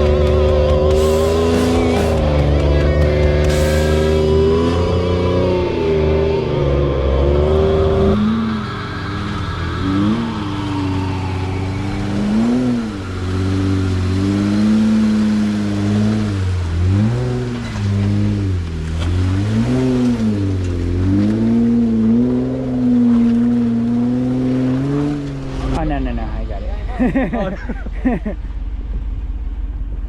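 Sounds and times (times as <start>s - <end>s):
engine revving under load: 0.0s - 26.2s.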